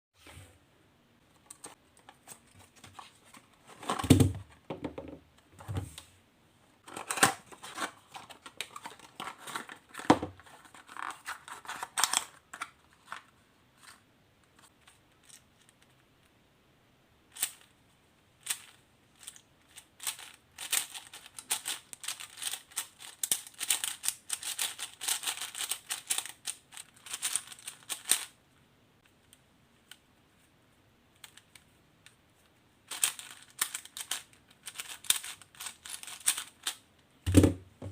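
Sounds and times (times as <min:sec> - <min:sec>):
plastic puzzle cube clicking: 0:18.4 - 0:28.3, 0:31.1 - 0:32.2, 0:32.9 - 0:36.8.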